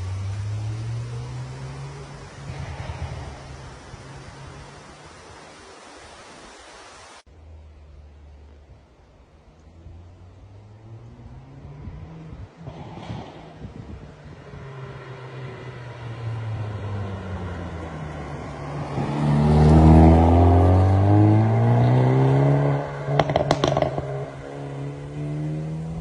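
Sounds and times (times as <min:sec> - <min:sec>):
car engine revving: 0:00.0 - 0:04.9, 0:09.8 - 0:26.0
exhaust pops and bangs: 0:23.1 - 0:24.4.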